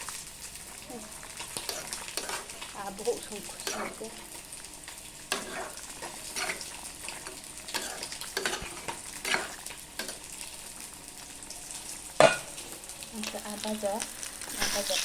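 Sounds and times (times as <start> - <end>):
food sizzling in a frying pan: 0.0 - 15.0
utensil scraping a pan: 1.5 - 2.6, 5.3 - 10.2.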